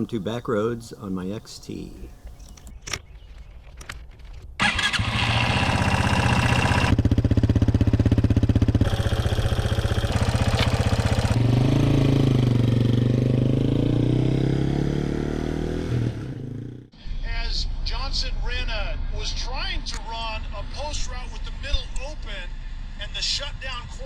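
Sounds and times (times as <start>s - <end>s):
motorcycle engine running: 4.6s - 16.9s.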